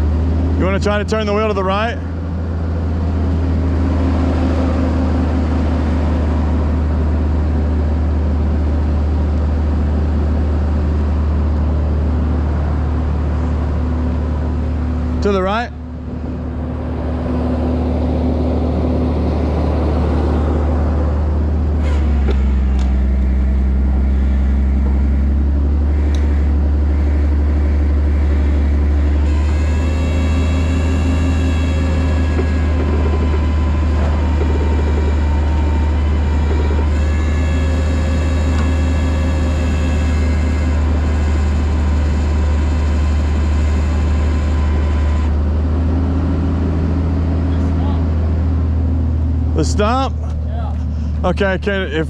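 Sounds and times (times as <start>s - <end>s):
truck engine droning with whine: 0.0s - 52.0s.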